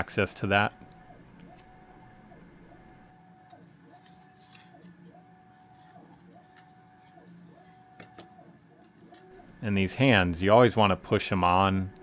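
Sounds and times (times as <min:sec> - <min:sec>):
printer stepper motors whining: 0:00.0 - 0:12.0.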